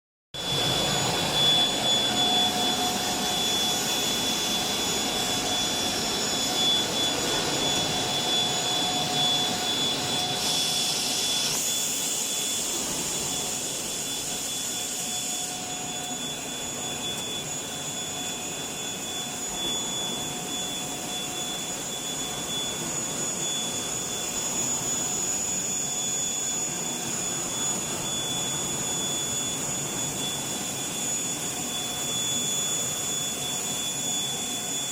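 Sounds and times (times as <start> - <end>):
extrusion machine running: 0.4 - 34.8
high whining tones: 0.4 - 34.9.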